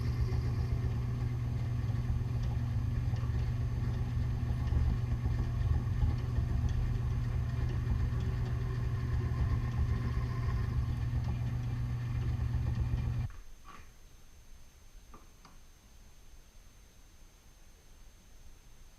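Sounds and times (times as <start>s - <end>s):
machine motor humming: 0.0s - 13.3s.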